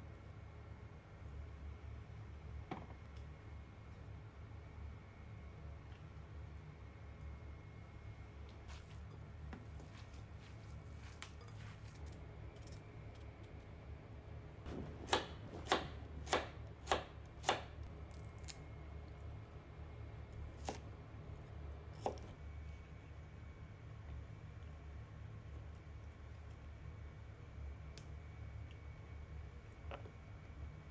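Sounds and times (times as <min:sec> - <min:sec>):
knife chopping on cutting board: 0:14.7 - 0:17.8, 0:20.6 - 0:20.8.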